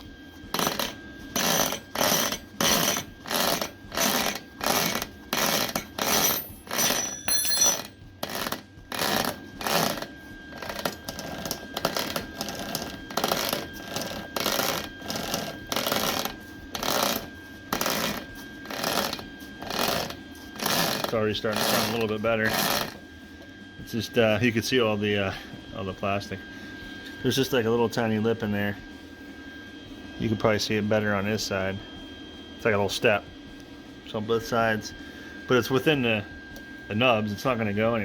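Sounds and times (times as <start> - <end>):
roller chain clattering: 0.6 - 10.0.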